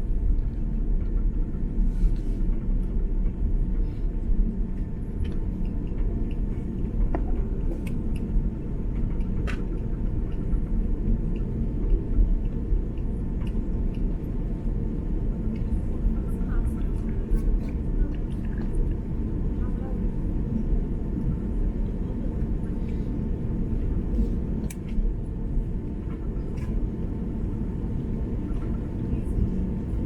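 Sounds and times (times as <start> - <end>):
aircraft cabin engine rumble: 0.0 - 30.0.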